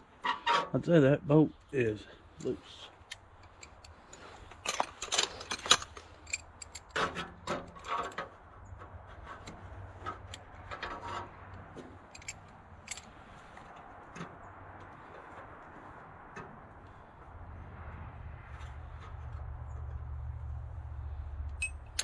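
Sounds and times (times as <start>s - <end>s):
hand tools clicking: 2.4s - 8.2s, 11.5s - 13.1s
metal scraping: 8.9s - 13.6s.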